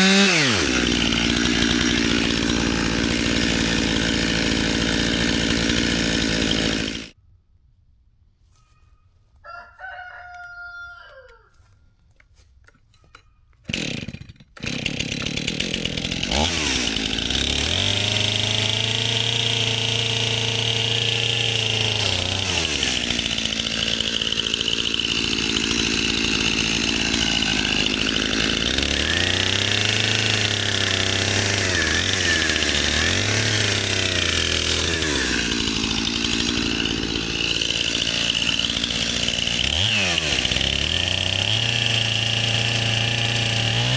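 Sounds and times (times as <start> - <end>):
chainsaw revving and idling: 0.0 - 7.2, 13.7 - 43.9
rooster crowing: 9.4 - 11.8.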